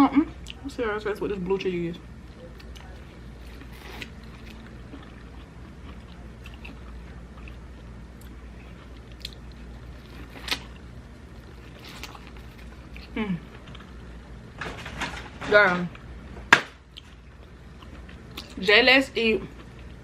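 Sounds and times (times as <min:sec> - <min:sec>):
person chewing: 0:02.5 - 0:14.1, 0:16.9 - 0:18.6.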